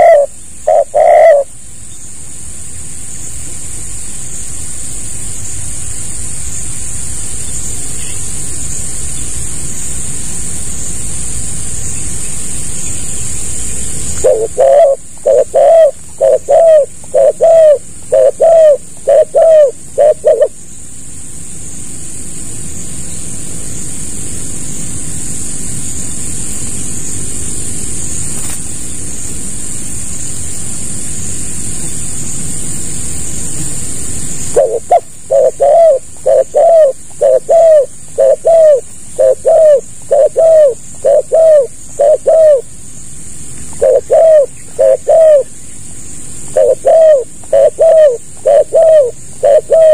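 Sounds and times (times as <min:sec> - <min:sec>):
dove cooing: 0:00.0 - 0:01.6, 0:14.2 - 0:20.6, 0:34.4 - 0:42.7, 0:43.7 - 0:45.6, 0:46.5 - 0:49.9.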